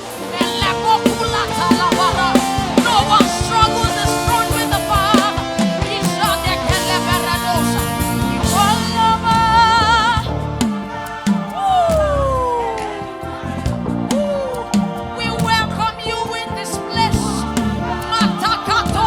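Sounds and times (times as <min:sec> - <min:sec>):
band with drums and guitar: 0:00.0 - 0:19.0
person singing with vibrato: 0:00.0 - 0:19.0.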